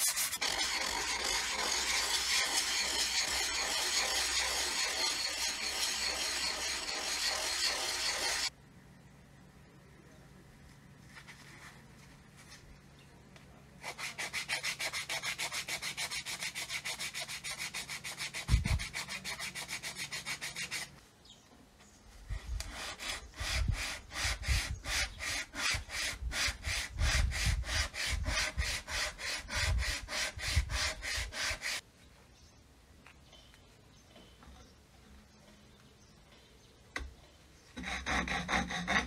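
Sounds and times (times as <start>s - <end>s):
hand sanding strokes: 0.0s - 8.5s, 13.8s - 21.0s, 22.1s - 31.8s.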